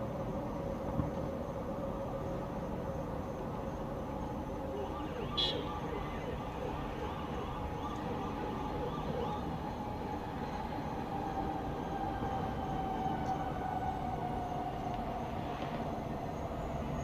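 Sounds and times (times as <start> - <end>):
distant town rumble: 4.0 - 17.0.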